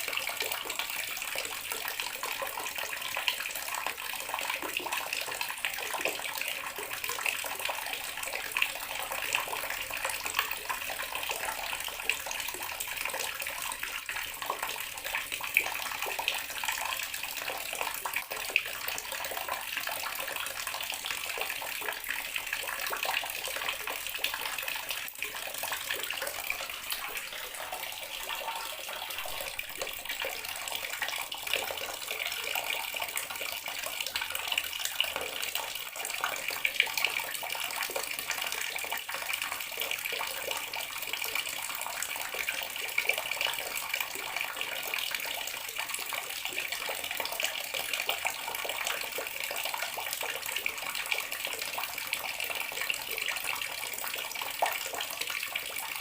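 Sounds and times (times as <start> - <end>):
water tap running into basin: 0.0 - 56.0.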